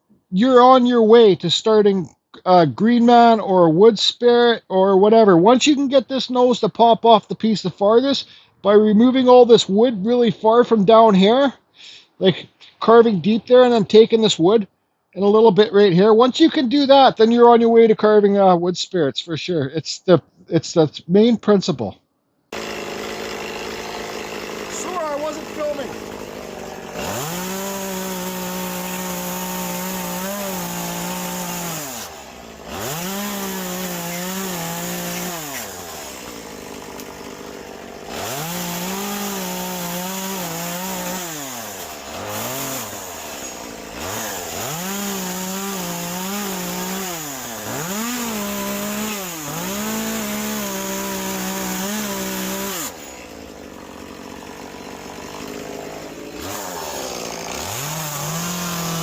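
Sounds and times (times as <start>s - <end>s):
chainsaw revving and cutting wood: 22.5s - 59.0s.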